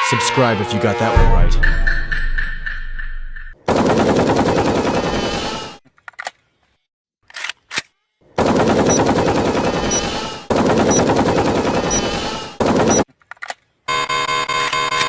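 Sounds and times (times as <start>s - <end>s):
loud rapid rattling: 8.4s - 13.0s.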